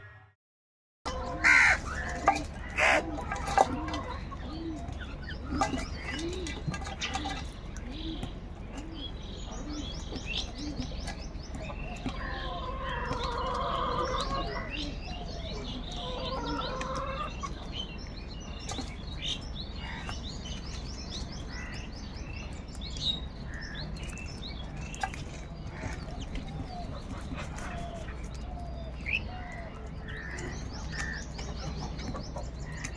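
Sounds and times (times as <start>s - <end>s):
birds calling: 1.1s - 32.9s
crows cawing: 1.3s - 3.1s.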